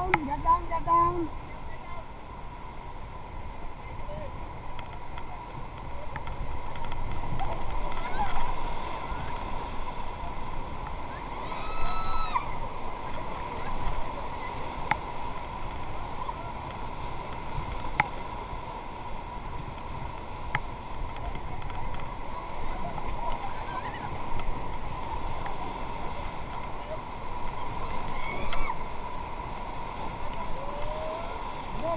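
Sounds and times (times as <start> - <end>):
whitewater rushing: 0.0 - 31.9.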